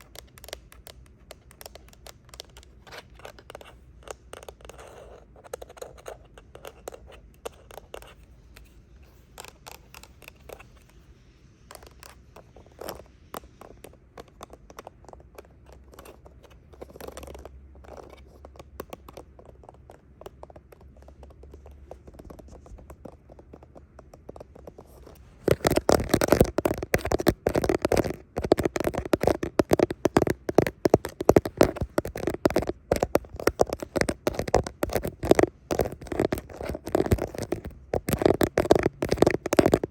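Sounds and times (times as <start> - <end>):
clicks and scrapes: 0.0 - 39.9
tapping on hard objects: 12.9 - 39.9.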